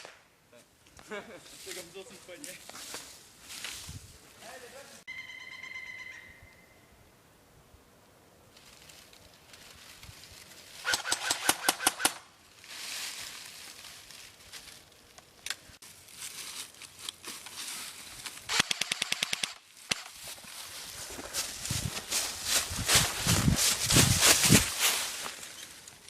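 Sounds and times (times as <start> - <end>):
rustling: 0.8 - 5.0, 8.5 - 11.5, 12.4 - 18.6, 19.6 - 26.0
airsoft guns firing bursts: 10.9 - 12.2, 18.5 - 20.0.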